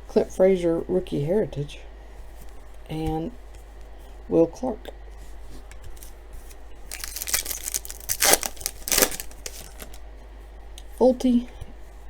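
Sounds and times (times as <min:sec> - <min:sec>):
wrapper tearing and crinkling: 0:06.9 - 0:10.0.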